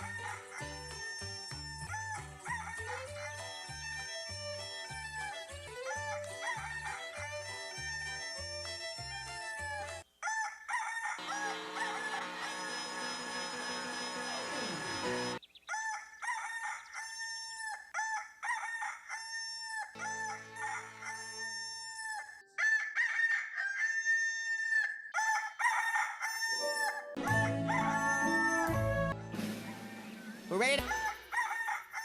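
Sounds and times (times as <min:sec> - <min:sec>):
rooster crowing: 0:01.9 - 0:03.4, 0:05.8 - 0:07.2, 0:10.2 - 0:29.1, 0:30.8 - 0:32.0.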